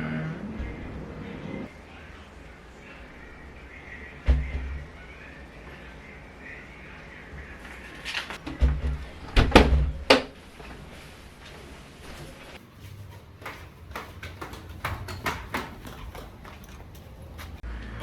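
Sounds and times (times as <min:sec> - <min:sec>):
heavy knocks and thumps: 0:12.6 - 0:17.6.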